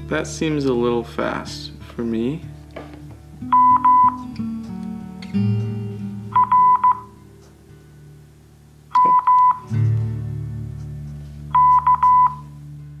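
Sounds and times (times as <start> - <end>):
guitar music: 0.0 - 13.0
morse code beeps: 3.5 - 4.2, 6.3 - 7.1, 9.0 - 9.6, 11.5 - 12.5.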